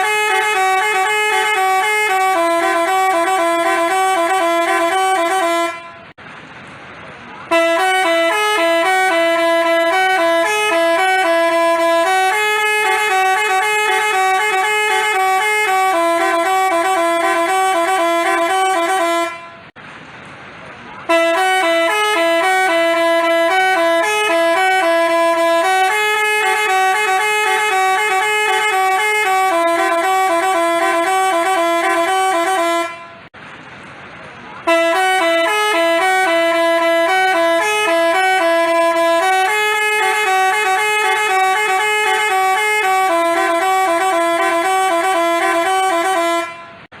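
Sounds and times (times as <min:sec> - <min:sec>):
multi-tone bus horn tune: 0:00.0 - 0:06.2, 0:07.3 - 0:19.8, 0:21.0 - 0:33.4, 0:34.6 - 0:47.0.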